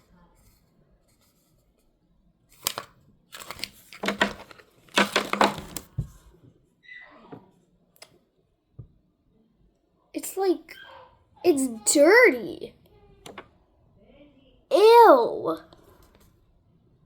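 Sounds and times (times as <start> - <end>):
plastic packaging crinkling: 2.6 - 6.0.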